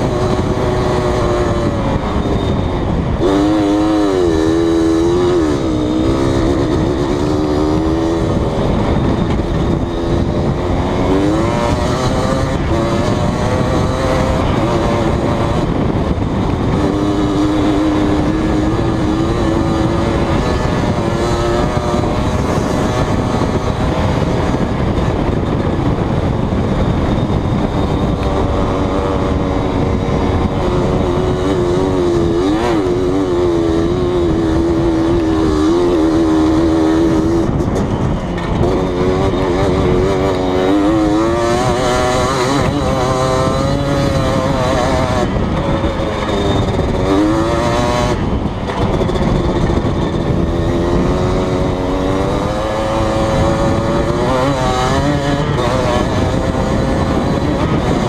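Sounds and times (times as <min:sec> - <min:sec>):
atv engine revving: 0:00.0 - 0:58.0
constant rushing noise: 0:00.0 - 0:58.0.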